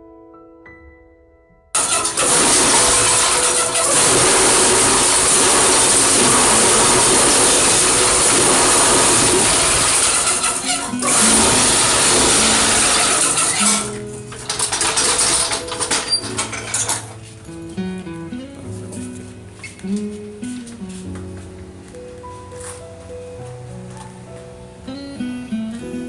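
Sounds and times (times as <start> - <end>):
block press machine running: 1.8 - 17.2.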